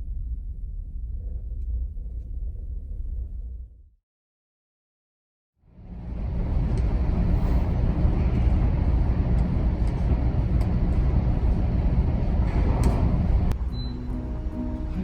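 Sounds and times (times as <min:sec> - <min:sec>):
ferry engine low rumble: 0:05.6 - 0:15.0.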